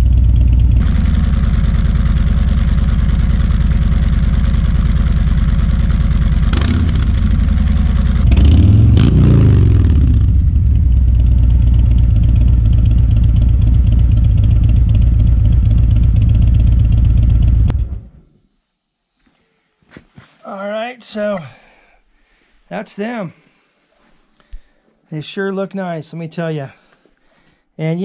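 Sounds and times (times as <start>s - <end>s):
motorcycle engine idling and revving: 0.0s - 18.2s.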